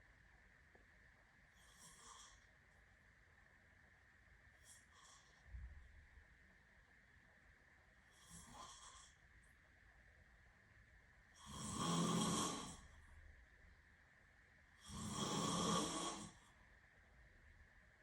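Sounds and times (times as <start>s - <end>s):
person snoring: 11.4s - 12.9s, 14.8s - 16.4s.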